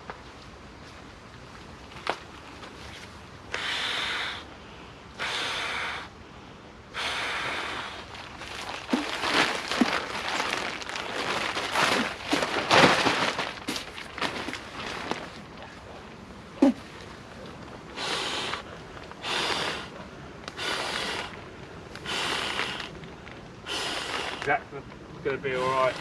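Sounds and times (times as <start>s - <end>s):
fabric rustling and rubbing: 8.1s - 16.1s.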